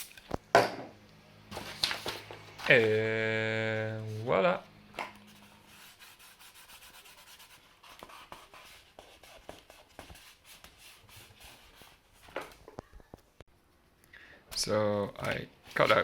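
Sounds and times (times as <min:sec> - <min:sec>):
scratchy cutting strokes: 0:05.2 - 0:12.0.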